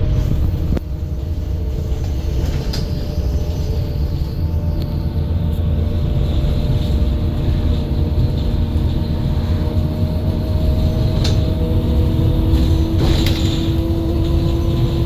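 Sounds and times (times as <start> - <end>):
bus engine drone: 0.0 - 15.0.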